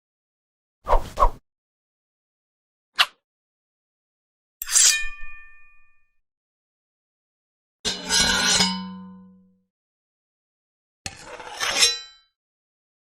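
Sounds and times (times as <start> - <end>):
blade swinging whooshes: 0.9 - 1.4
steel blade clash ringing: 4.6 - 6.0.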